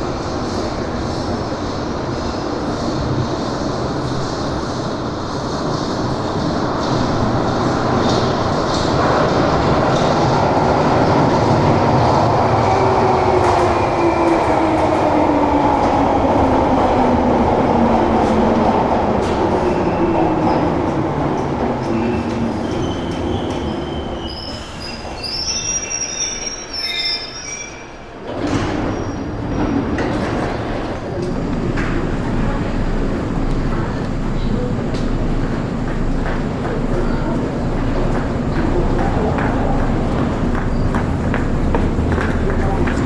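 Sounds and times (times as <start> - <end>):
train running and slowing: 0.0 - 43.0
wheels and brakes squealing: 22.0 - 29.8.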